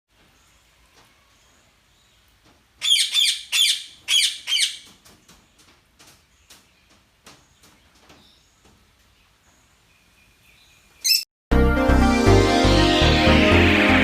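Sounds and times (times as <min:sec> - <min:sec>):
bird squawking harshly: 0:02.8 - 0:04.8, 0:11.0 - 0:11.2
faint short bird chirps: 0:11.0 - 0:11.3.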